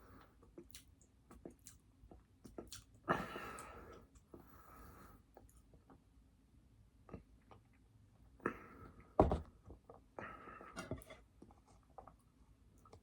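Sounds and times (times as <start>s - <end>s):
chewing with mouth clicks: 0.5s - 3.0s.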